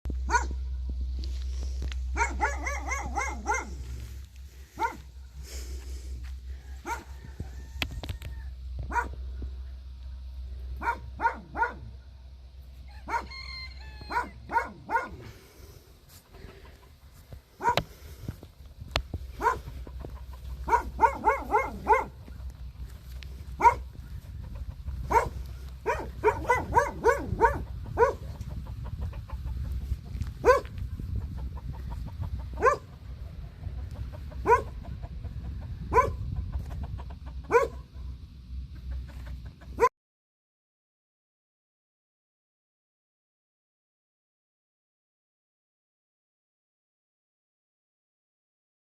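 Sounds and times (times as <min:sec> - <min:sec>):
dog barking: 0:00.2 - 0:00.6, 0:02.1 - 0:03.9, 0:04.8 - 0:05.1, 0:06.8 - 0:07.1, 0:08.9 - 0:09.2, 0:10.8 - 0:12.0, 0:13.0 - 0:13.4, 0:14.1 - 0:15.3, 0:17.6 - 0:17.9, 0:19.4 - 0:19.7, 0:20.6 - 0:22.2, 0:23.6 - 0:23.9, 0:25.1 - 0:28.4, 0:30.4 - 0:30.8, 0:32.6 - 0:33.0, 0:34.4 - 0:34.8, 0:35.9 - 0:36.2, 0:37.4 - 0:37.9.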